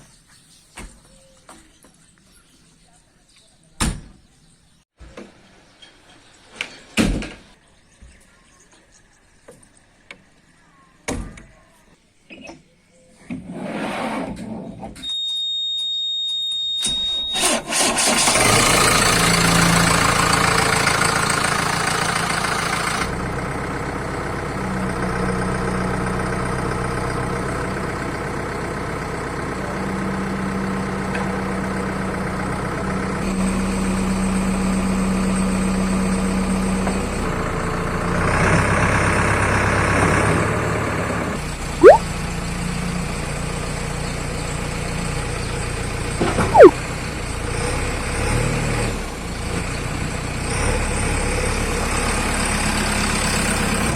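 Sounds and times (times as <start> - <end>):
short high beep: 46.6 - 46.8.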